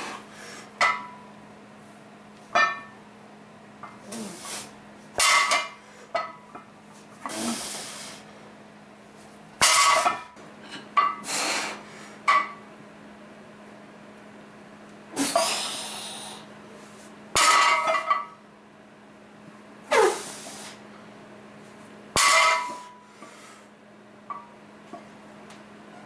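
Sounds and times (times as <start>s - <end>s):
sharp effort breaths: 15.2s - 16.5s.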